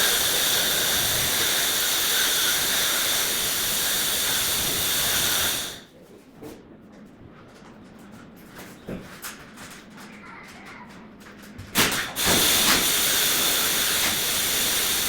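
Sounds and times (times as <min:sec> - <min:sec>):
pressurised gas hissing out: 0:00.0 - 0:05.9, 0:11.9 - 0:15.0.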